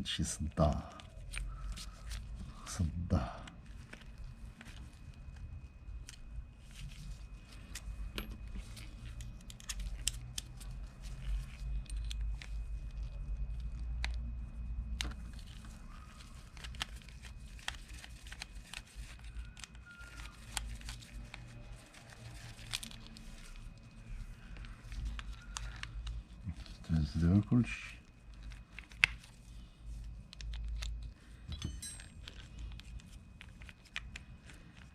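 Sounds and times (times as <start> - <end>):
low steady hum: 0.0 - 34.9
metal parts clicking and scraping: 30.9 - 33.0.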